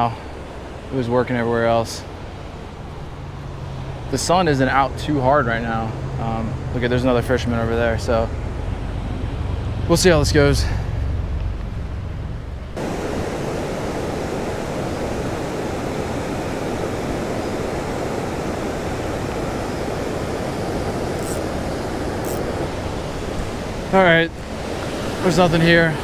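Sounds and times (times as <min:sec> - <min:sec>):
waterfall rushing: 0:12.8 - 0:26.0.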